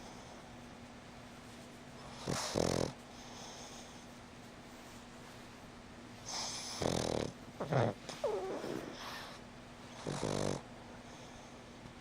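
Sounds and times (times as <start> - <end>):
dog snoring: 2.1 - 3.5, 6.3 - 10.7.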